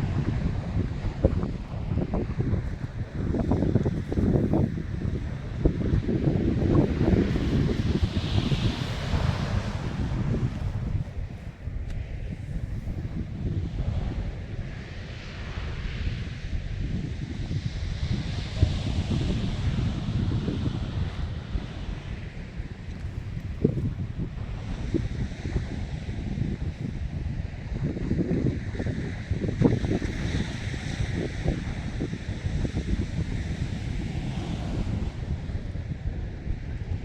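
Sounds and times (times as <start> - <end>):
sea water washing: 0.0 - 27.6
wind buffeting microphone: 0.0 - 37.0.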